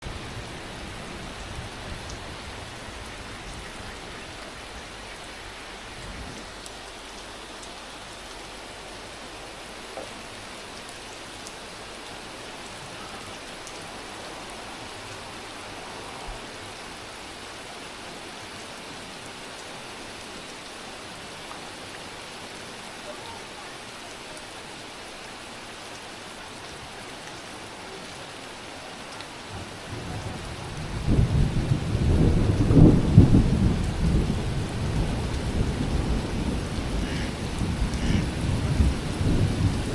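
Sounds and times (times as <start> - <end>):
steady rain hiss: 0.0 - 39.9
raindrop ticks: 6.3 - 8.5, 9.8 - 11.6, 35.0 - 39.7.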